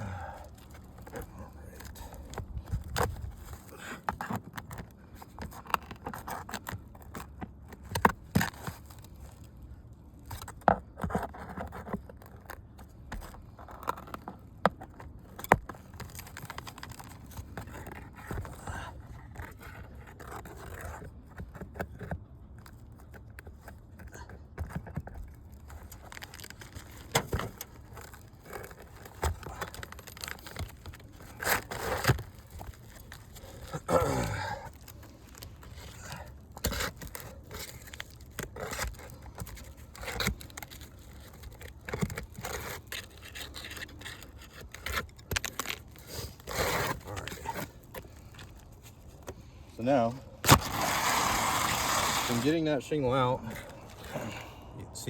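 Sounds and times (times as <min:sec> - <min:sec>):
roof shingles scraping and knocking: 0:24.6 - 0:54.5
shingles tearing: 0:24.6 - 0:54.6.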